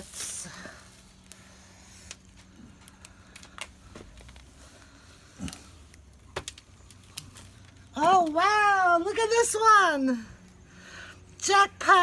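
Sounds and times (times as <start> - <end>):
hands rustling through soil: 0.0 - 8.8.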